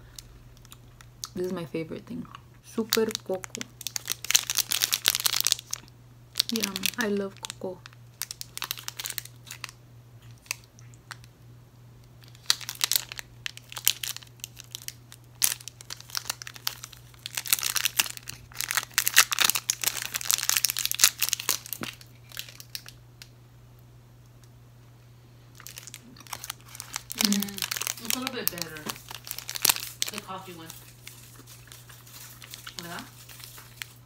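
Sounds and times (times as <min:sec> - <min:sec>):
plastic wrapper crinkling: 0:00.0 - 0:01.4, 0:02.7 - 0:11.3, 0:12.0 - 0:23.3, 0:25.5 - 0:34.0.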